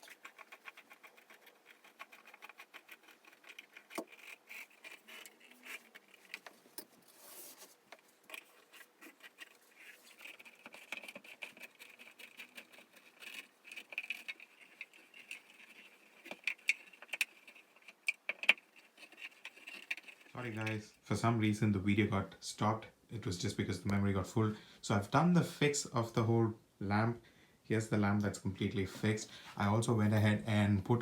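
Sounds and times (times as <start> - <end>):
short rustling: 4.1 - 17.8.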